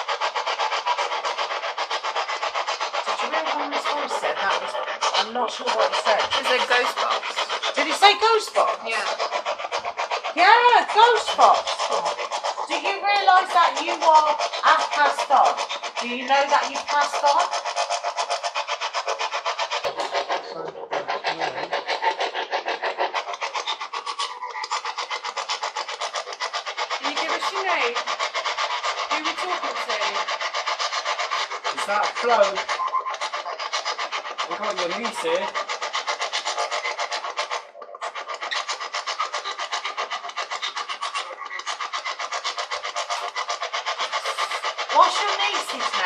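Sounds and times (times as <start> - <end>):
radio static chopping rapidly: 3.2 - 18.3.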